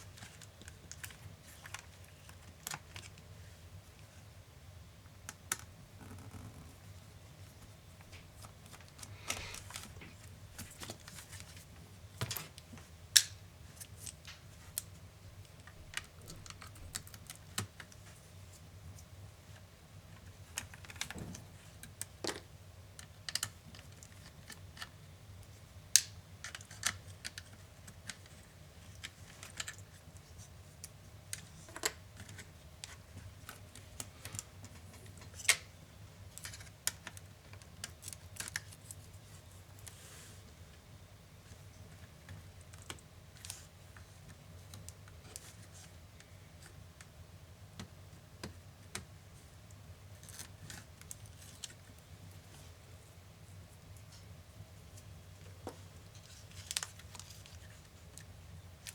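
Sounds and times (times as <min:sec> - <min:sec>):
small clicks of laptop parts: 0:20.2 - 0:24.9, 0:26.0 - 0:39.1.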